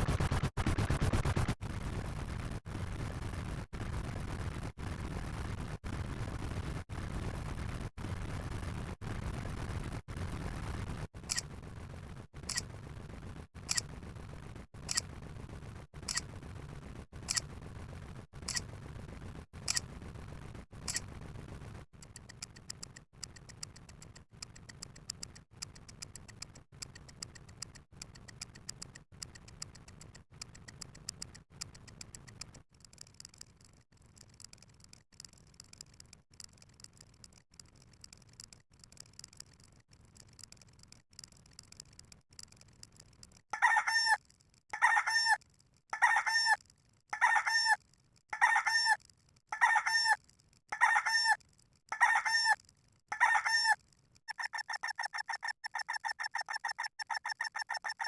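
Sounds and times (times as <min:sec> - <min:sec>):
sharp high clicks: 0:22.0 - 0:58.0
fast high ticking: 0:47.2 - 0:58.0.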